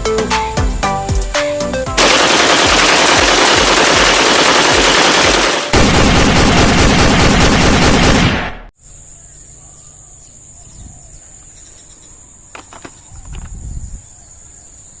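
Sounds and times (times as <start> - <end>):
toy gun rapid firing: 2.0 - 8.4.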